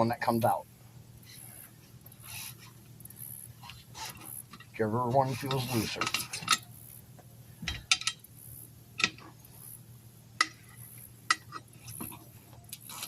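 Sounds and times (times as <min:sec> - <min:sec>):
low steady hum: 0:00.0 - 0:13.0
tyre irons clinking on rim: 0:04.5 - 0:06.7.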